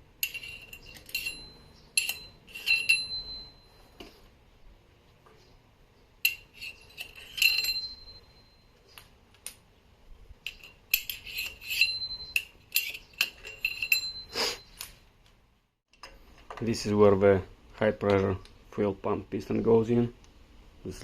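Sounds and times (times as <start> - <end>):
metal tools clinking: 0.0 - 4.2, 6.2 - 9.6, 10.4 - 15.0.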